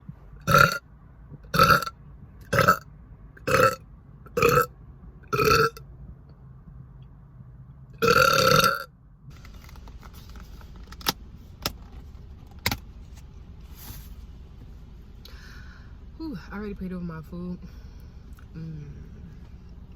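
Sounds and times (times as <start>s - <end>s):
woman burping: 8.0s - 8.9s.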